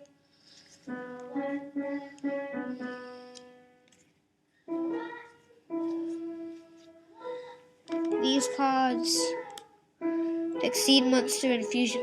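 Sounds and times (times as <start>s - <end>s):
piano notes: 0.7s - 3.9s, 4.7s - 12.0s.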